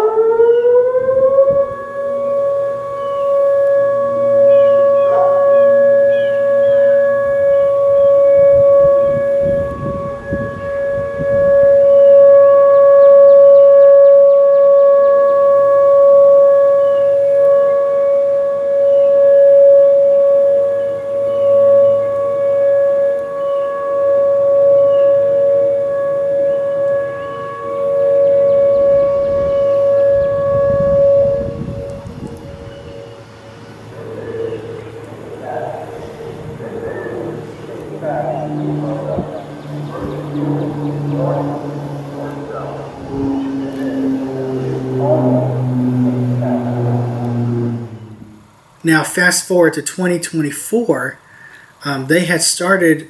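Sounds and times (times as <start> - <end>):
outdoor warning siren tone: 0.0 - 53.0
faint bird chirps: 20.1 - 22.2, 23.2 - 23.8.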